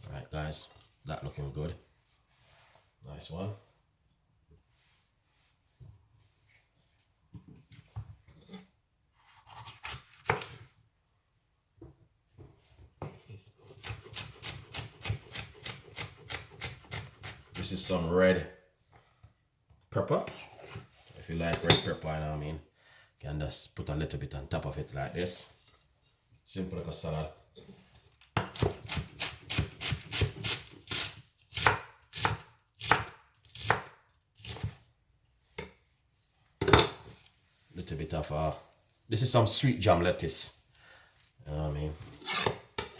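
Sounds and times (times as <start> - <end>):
knife chopping on wooden board: 9.4 - 10.6, 28.4 - 34.8.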